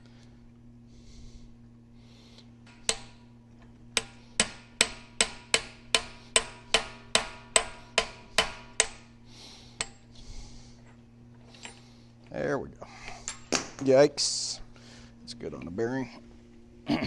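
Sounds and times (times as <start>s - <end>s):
hammer ringing on metal: 4.0s - 9.0s.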